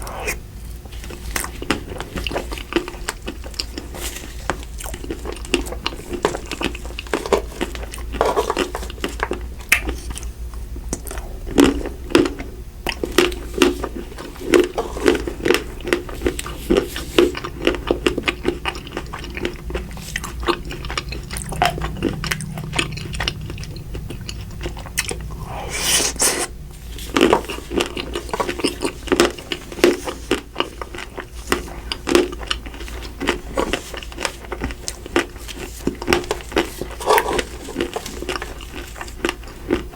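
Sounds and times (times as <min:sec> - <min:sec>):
biting and chewing ice cream: 0:00.0 - 0:39.9
crunching chocolate: 0:00.0 - 0:39.9.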